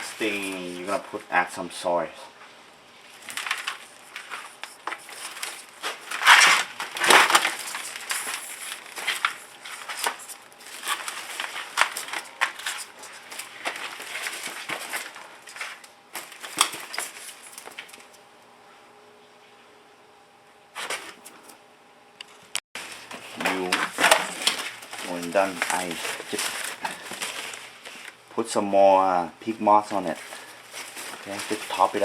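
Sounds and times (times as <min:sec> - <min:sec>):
potting soil crunching and rustling: 0:00.0 - 0:01.1, 0:22.8 - 0:28.2, 0:29.9 - 0:32.0.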